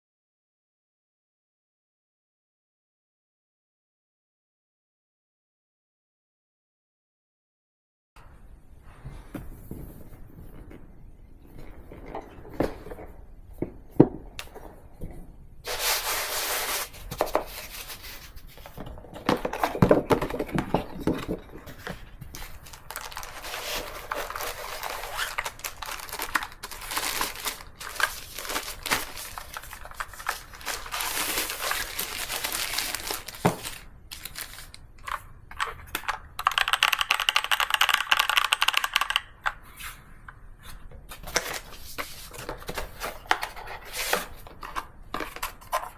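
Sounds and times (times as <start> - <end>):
wrapping crinkling and tearing: 22.3 - 34.8.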